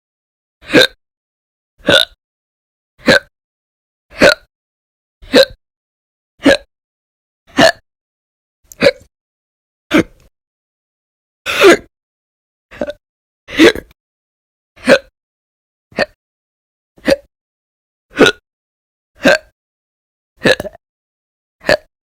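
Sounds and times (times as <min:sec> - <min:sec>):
woman hiccuping: 0:03.0 - 0:03.3, 0:04.2 - 0:04.5, 0:05.2 - 0:05.6, 0:07.6 - 0:07.8, 0:08.7 - 0:09.1, 0:12.8 - 0:13.9, 0:17.0 - 0:17.3, 0:18.1 - 0:18.4, 0:19.2 - 0:19.5, 0:20.4 - 0:20.8, 0:21.6 - 0:21.9.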